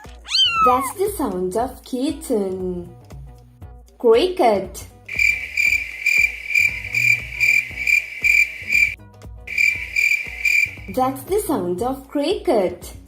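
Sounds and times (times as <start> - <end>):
background music with beat: 4.9 - 11.1
cricket chirping: 5.1 - 10.9.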